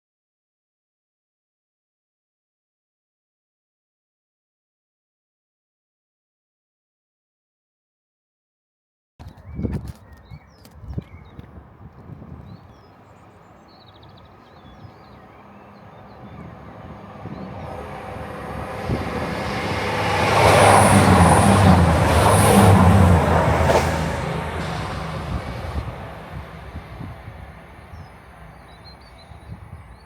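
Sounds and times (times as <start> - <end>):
faint birdsong: 9.3 - 20.8, 24.6 - 30.0
diesel train passing: 11.6 - 30.0.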